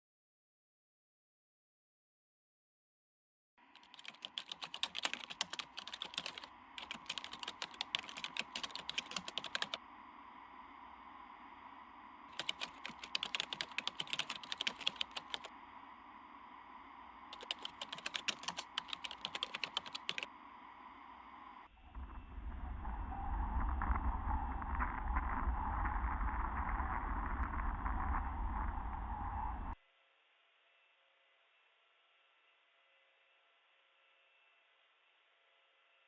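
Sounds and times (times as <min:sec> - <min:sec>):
faint hum: 0:03.6 - 0:29.8
rapid keyboard typing: 0:03.7 - 0:09.8, 0:12.3 - 0:15.6, 0:17.3 - 0:20.3.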